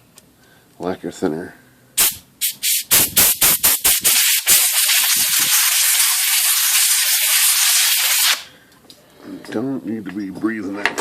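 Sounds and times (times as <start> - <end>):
compressed air blow gun hissing: 2.0 - 8.5.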